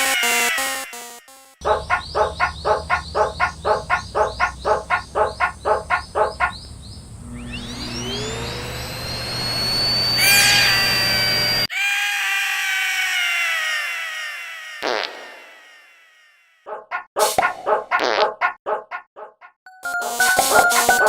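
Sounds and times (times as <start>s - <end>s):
rising whine: 3.5s - 11.7s
falling high sweeps: 7.2s - 11.7s.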